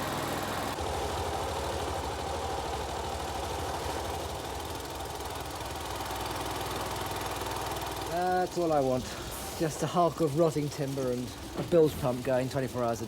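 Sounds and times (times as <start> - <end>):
engine-driven pump pulsing: 0.0 - 13.0.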